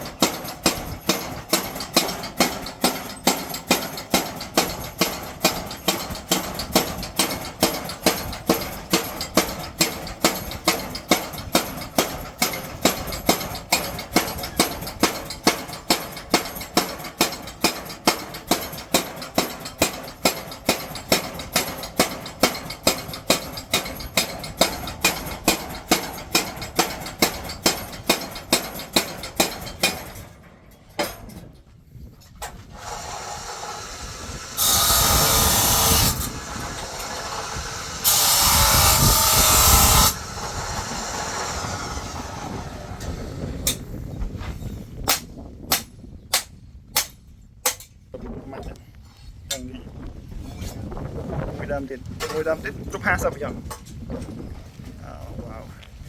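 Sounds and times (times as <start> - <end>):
hammer blows on metal: 32.7 - 48.0.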